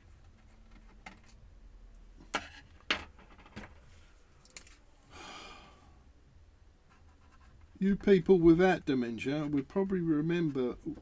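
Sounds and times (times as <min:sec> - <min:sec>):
person sighing: 0:05.1 - 0:06.0.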